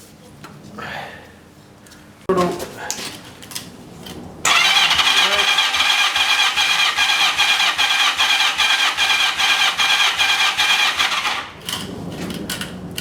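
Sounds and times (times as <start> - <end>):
engine cranking on starter: 4.5 - 13.0.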